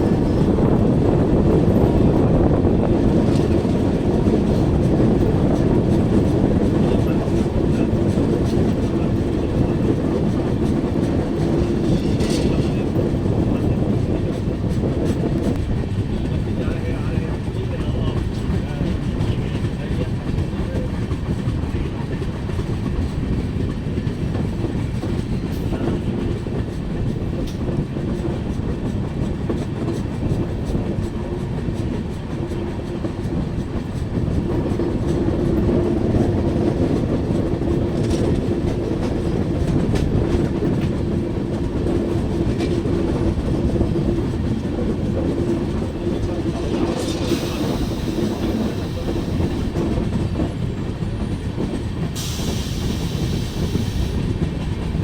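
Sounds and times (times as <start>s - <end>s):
train wheels on track: 0.0s - 55.0s.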